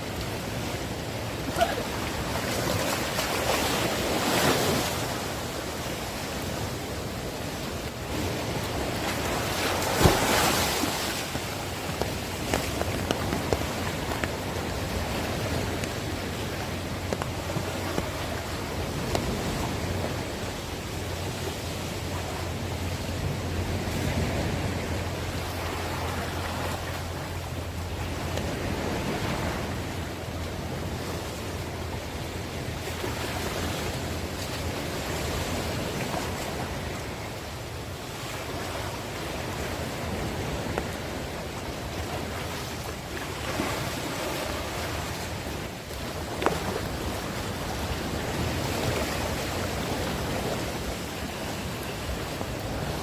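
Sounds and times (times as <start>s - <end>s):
heavy rain: 0.0s - 5.9s
gusty wind: 0.0s - 53.0s.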